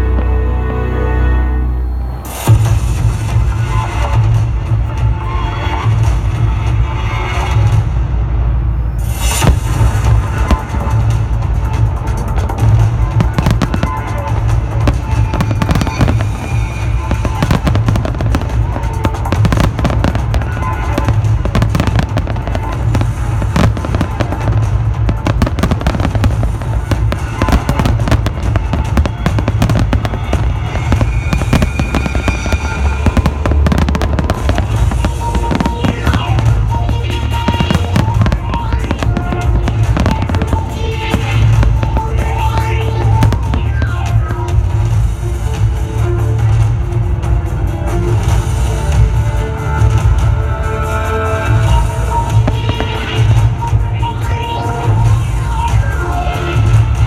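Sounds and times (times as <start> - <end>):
music playing: 0.0 - 57.0
fireworks bursting: 9.0 - 45.7, 51.5 - 57.0.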